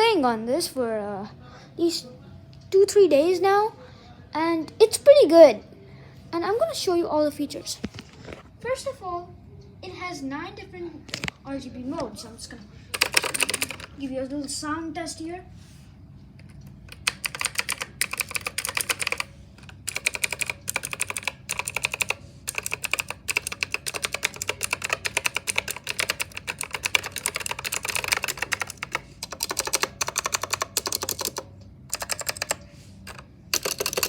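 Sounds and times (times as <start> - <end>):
mechanical keyboard keys clicking: 12.9 - 13.9, 16.9 - 34.0.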